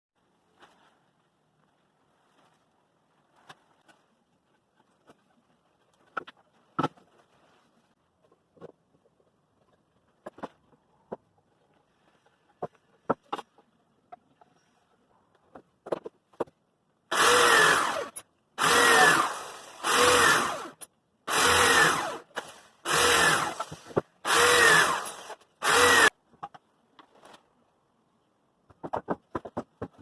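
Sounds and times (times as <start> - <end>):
electric drill spinning: 17.1 - 26.2.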